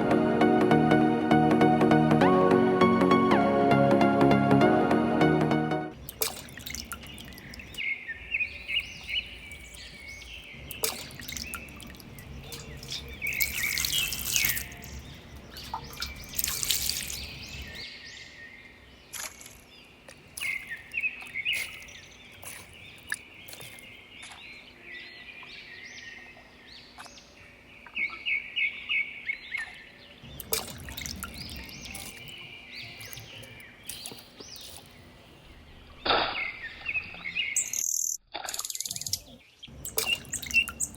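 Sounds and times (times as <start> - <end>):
water dripping: 6.0 - 7.9, 8.6 - 17.8, 20.1 - 24.4, 30.2 - 35.1, 38.6 - 40.9
small birds chirping: 6.0 - 40.9.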